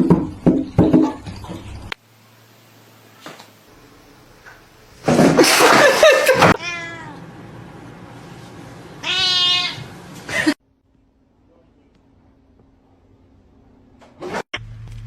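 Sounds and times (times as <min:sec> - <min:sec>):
cat meowing: 0:06.6 - 0:07.2, 0:09.0 - 0:09.8
cat yowling: 0:09.0 - 0:09.8.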